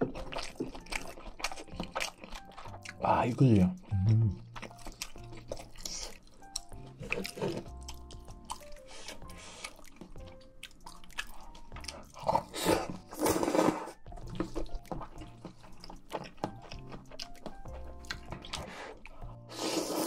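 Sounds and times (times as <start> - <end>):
wet chewing and smacking: 0.0 - 19.5
soft background music: 0.0 - 20.0.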